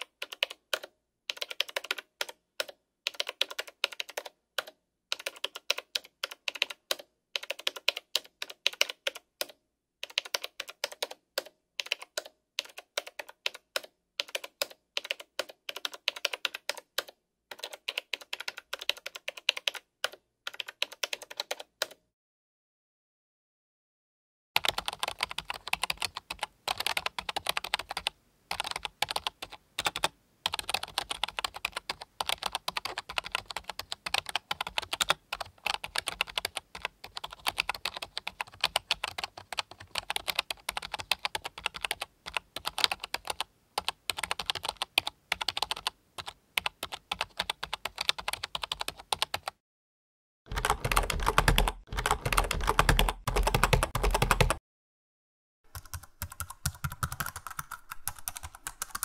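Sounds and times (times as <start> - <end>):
keyboard typing clicks: 50.5 - 54.6, 55.7 - 59.0.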